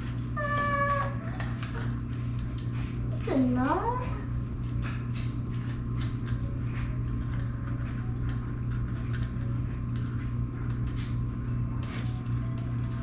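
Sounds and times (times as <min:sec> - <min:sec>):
low hum: 0:00.0 - 0:13.0.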